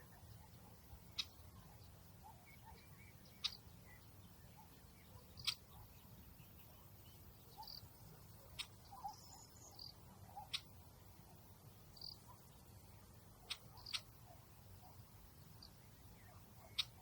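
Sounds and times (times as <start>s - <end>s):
high chirps of birds or insects: 0.0s - 17.0s.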